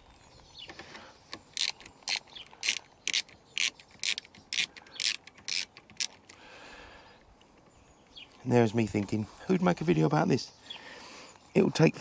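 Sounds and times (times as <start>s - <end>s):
ratchet wrench clicking: 1.6s - 6.2s.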